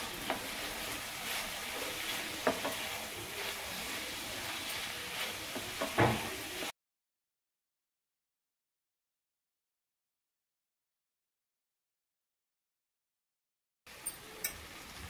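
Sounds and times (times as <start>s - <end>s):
food sizzling in a pan: 0.0s - 6.7s, 13.9s - 15.0s
spoon knocking against pan: 2.4s - 2.8s, 5.5s - 6.3s.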